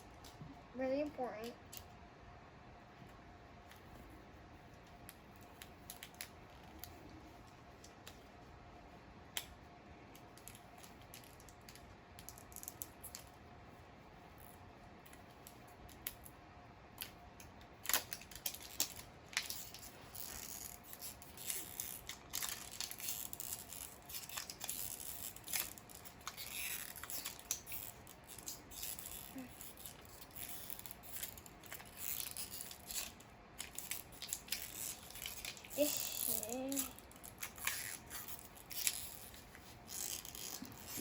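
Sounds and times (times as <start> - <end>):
plastic packaging clicks and snaps: 17.0 - 19.9
plastic wrap crinkling and tearing: 17.8 - 41.0.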